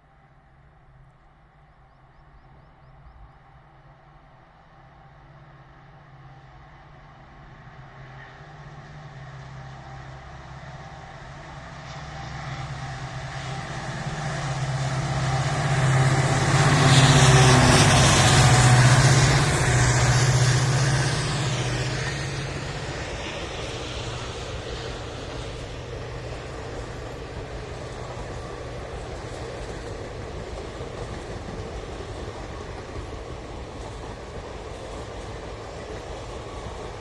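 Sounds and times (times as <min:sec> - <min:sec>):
diesel locomotive engine humming: 0:00.0 - 0:37.0
train wheels on rails: 0:07.5 - 0:37.0.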